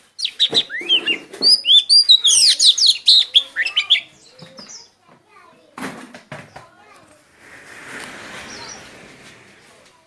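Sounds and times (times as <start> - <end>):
songbird chirping: 0.0 - 5.6, 6.2 - 7.4, 8.0 - 10.0.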